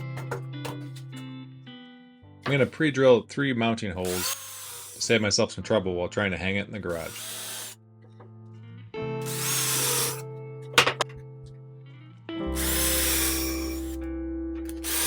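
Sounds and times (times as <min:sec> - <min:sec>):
background music: 0:00.0 - 0:06.3, 0:06.9 - 0:15.0
power drill boring wood: 0:02.5 - 0:02.8, 0:04.0 - 0:05.3, 0:06.9 - 0:07.8, 0:09.2 - 0:10.2, 0:12.5 - 0:14.0, 0:14.7 - 0:15.0.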